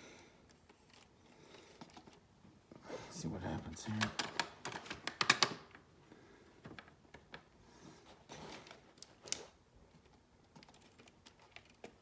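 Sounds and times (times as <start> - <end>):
small parts clicking and tapping: 3.9 - 5.8, 9.0 - 12.0.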